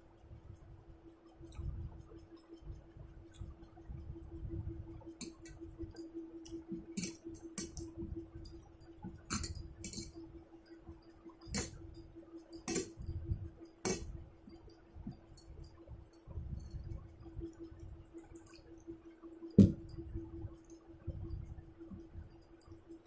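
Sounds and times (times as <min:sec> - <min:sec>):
faint hum: 0:00.0 - 0:23.0
dishes clinking: 0:09.3 - 0:10.2.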